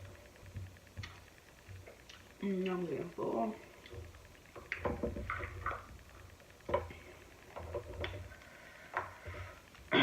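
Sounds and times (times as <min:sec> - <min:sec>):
close-miked chewing and smacking: 0:00.7 - 0:02.8.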